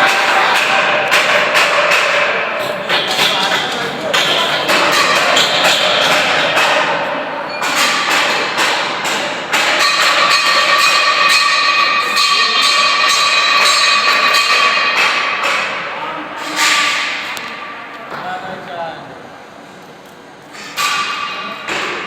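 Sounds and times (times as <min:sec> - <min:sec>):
hammer knocking on metal: 0:09.5 - 0:16.8
high machine whine: 0:10.2 - 0:16.6.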